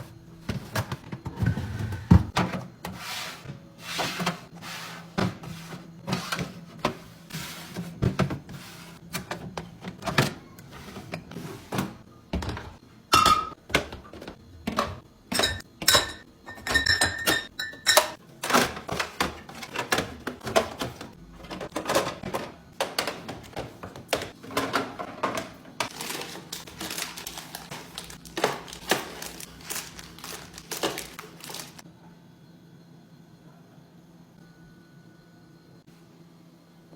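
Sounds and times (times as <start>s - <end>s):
plastic knocks and clatters: 18.4s - 31.8s.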